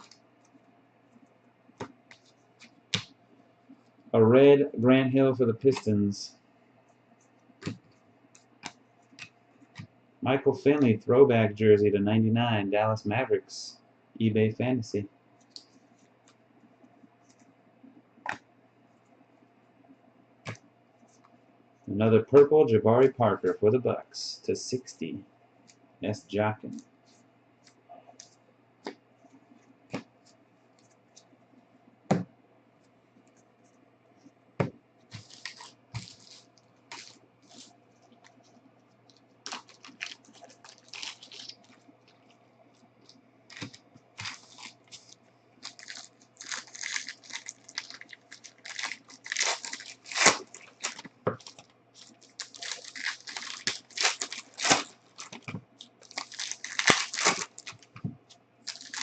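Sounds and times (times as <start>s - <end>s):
wrapper crinkling and tearing: 35.1s - 42.4s, 43.0s - 58.0s, 58.6s - 59.0s.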